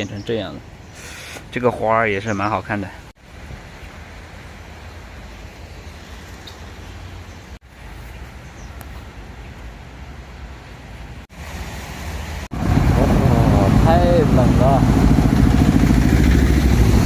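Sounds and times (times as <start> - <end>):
low rumble of street ambience: 0.0 - 17.0
loud low rumble: 12.5 - 17.0.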